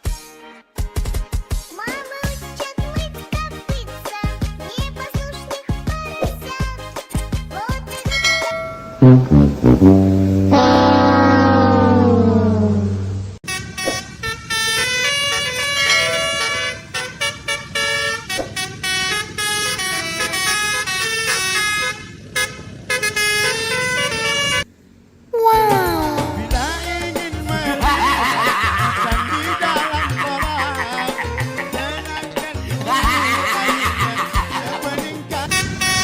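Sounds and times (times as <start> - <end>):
bouncy music track: 4.8 - 13.1, 25.7 - 35.5
truck air horn blasts: 8.9 - 24.7, 35.5 - 36.0.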